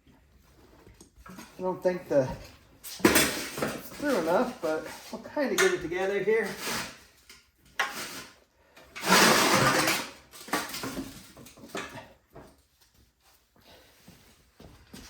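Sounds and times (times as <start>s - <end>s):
metal parts clattering and scraping: 8.9s - 11.9s.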